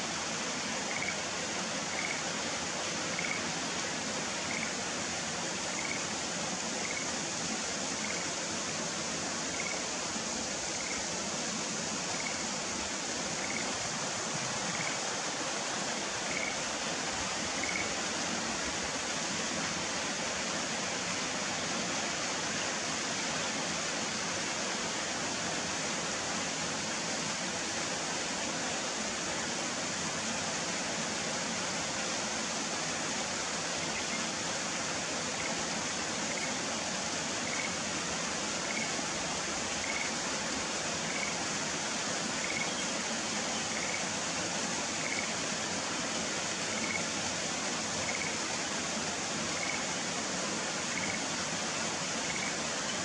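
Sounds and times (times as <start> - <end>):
tree frog calling short notes: 0.9 - 1.2, 1.9 - 2.2, 3.2 - 3.4, 4.5 - 4.7, 5.8 - 6.0, 9.5 - 9.8, 13.4 - 13.7, 16.3 - 16.6, 17.6 - 17.9, 37.4 - 37.7, 39.8 - 40.1, 42.4 - 42.8, 50.9 - 51.2.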